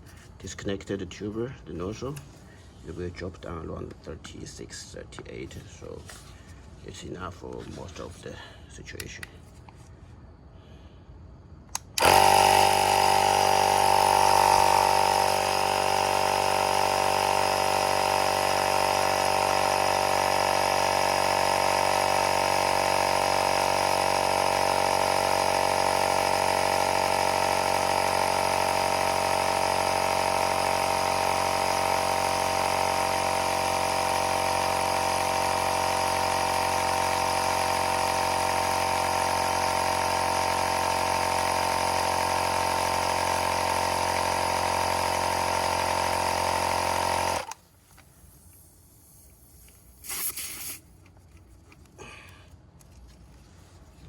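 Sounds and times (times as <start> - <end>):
electric air compressor running: 11.7 - 50.9.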